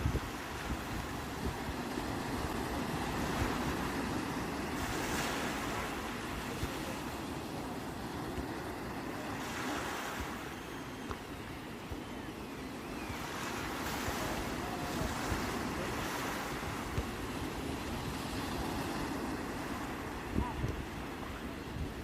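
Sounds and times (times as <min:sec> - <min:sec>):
wind buffeting microphone: 0:00.0 - 0:10.6, 0:13.1 - 0:22.0
sea waves washing ashore: 0:00.0 - 0:22.0.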